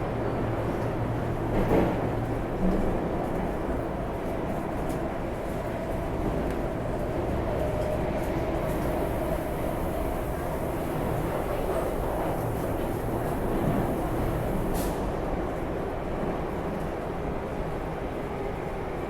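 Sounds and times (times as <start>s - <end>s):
metro train low rumble: 0.0s - 19.0s.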